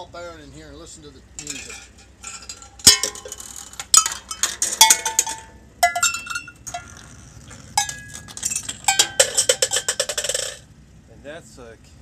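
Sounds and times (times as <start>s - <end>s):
ball bearing striking cowbells: 1.4s - 10.6s.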